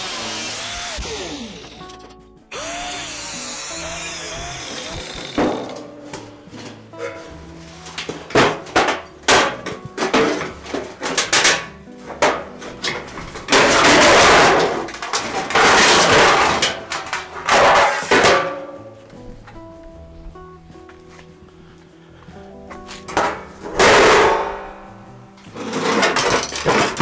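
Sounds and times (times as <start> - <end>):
power cutting tool cutting steel: 0.0 - 6.0
sharp metallic knocks: 0.0 - 19.7, 22.7 - 27.0
faint background music: 0.0 - 27.0.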